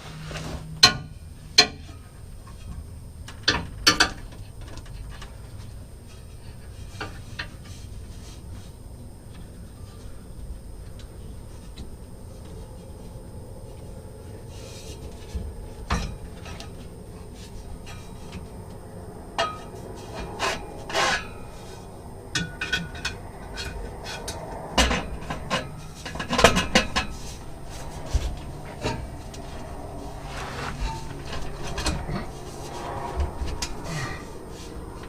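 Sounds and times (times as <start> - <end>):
metal pipe parts clanking: 19.4 - 21.8, 22.4 - 32.4.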